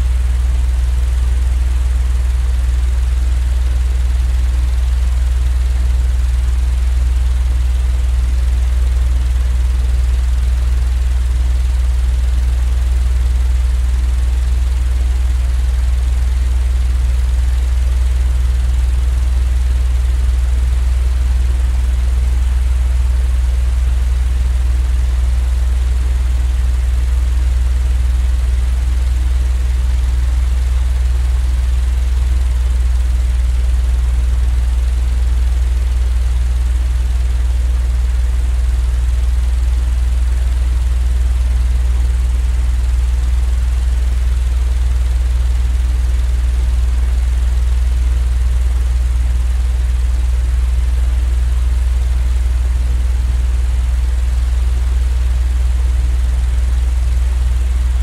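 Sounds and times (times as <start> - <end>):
low mechanical drone: 32.1 - 39.1, 52.5 - 53.4, 57.5 - 58.0.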